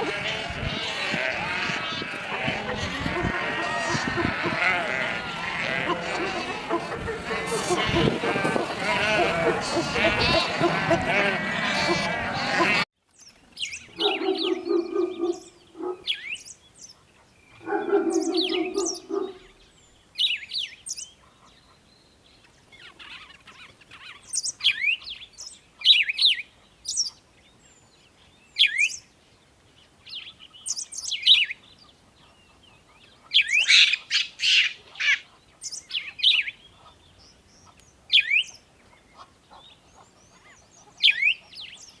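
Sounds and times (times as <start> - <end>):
low animal calls: 0.0 - 12.9, 14.0 - 16.1, 17.6 - 19.5
small birds chirping: 0.0 - 42.0.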